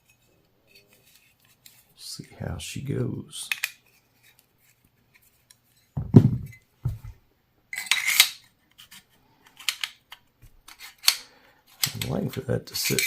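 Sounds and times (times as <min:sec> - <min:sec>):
scrape with metallic clinks: 0:00.0 - 0:01.9
low knocks: 0:06.0 - 0:07.1.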